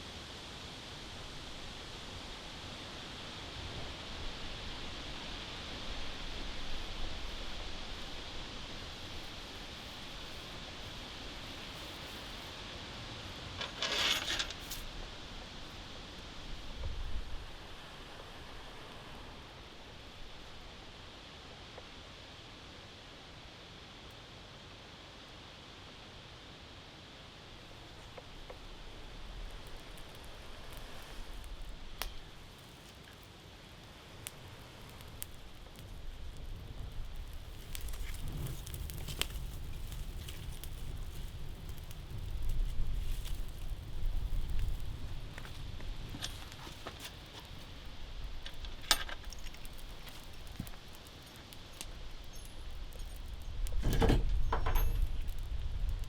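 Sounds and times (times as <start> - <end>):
campfire crackling: 0.0 - 56.0
woodland ambience hiss: 0.0 - 56.0
short rustle: 13.5 - 15.0
sharp fire pops: 27.9 - 56.0.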